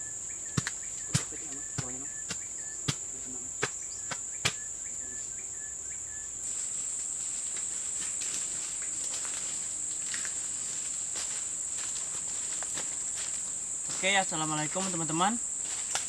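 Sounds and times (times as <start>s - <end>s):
insects droning: 0.0s - 16.0s
sharp knocks: 0.6s - 4.7s
rough hiss: 6.4s - 11.6s.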